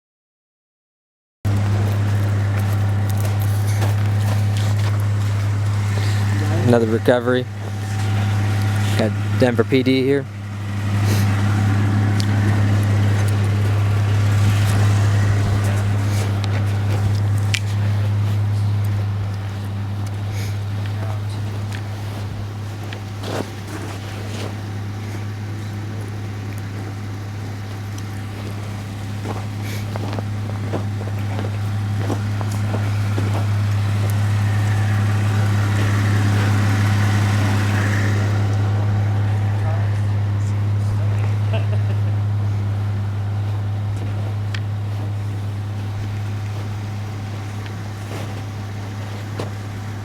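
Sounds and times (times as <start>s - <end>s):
vehicle engine idling: 1.5s - 50.0s.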